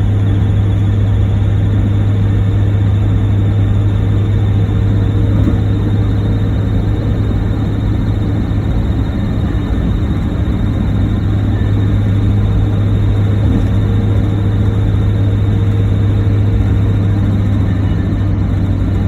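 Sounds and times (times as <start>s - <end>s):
car engine humming: 0.0s - 19.0s.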